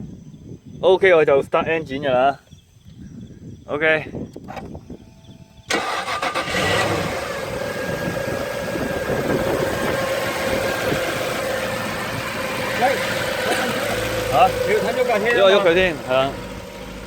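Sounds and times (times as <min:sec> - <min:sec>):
car engine starting: 0:05.6 - 0:17.0.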